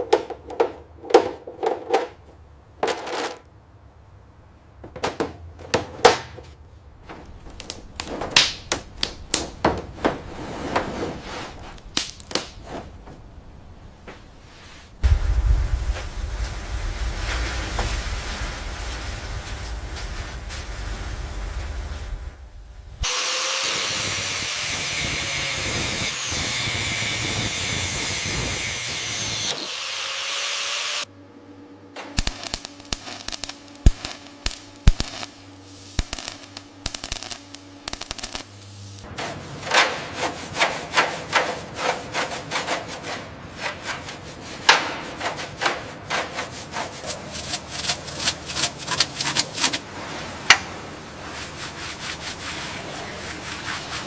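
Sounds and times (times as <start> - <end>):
steady hiss: 13.6 - 23.1, 32.2 - 39.2
low hum: 15.0 - 23.1, 31.1 - 39.0
quick rubbing strokes: 45.2 - 50.3, 51.0 - 54.0.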